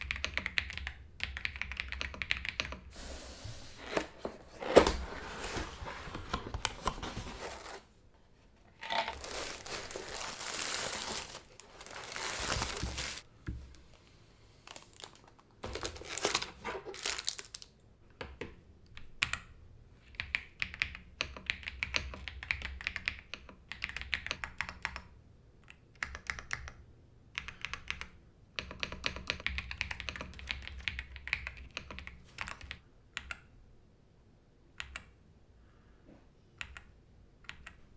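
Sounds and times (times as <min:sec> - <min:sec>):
rapid typing on keyboard: 0:00.0 - 0:02.8, 0:20.2 - 0:25.1, 0:25.7 - 0:26.8, 0:27.4 - 0:33.4
packaging rustling and tearing: 0:03.8 - 0:07.9, 0:08.7 - 0:13.2, 0:14.7 - 0:17.7.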